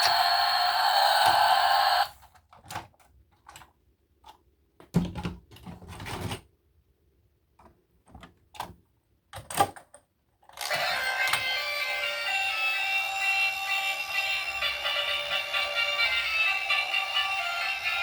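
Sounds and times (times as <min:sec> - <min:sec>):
background music: 0:10.7 - 0:18.0.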